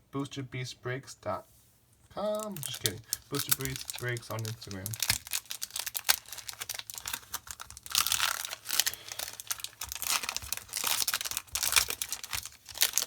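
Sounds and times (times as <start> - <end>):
foil wrappers crinkling: 2.2 - 13.0.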